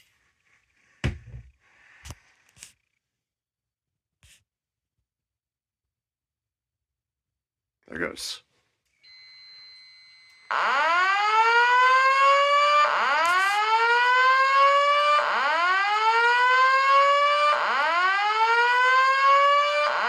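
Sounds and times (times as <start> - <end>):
faint steady beep tone: 9.0 - 10.5
alarm whoop tone: 9.1 - 20.0.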